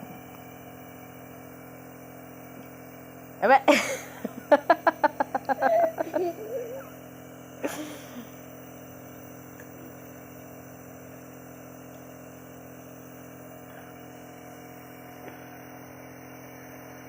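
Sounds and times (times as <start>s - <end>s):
steady room hum: 0.0s - 17.0s.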